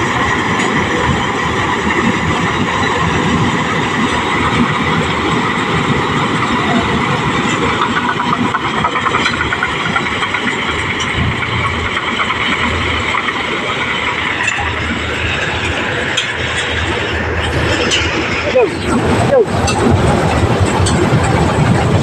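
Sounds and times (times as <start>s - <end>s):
mechanical clatter: 7.4s - 22.0s.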